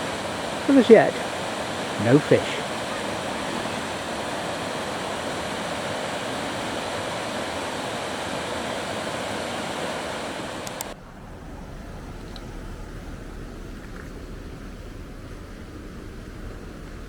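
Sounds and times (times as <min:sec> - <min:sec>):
river water over rocks: 0:00.0 - 0:17.0
low steady hum: 0:10.5 - 0:17.0.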